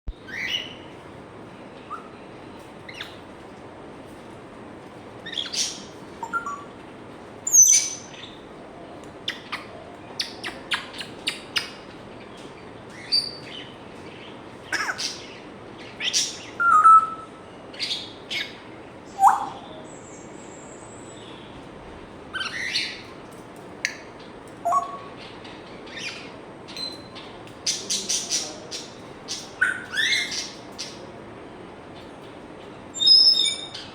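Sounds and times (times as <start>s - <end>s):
parrot chirps and whistles: 24.6s - 25.1s, 33.0s - 33.9s.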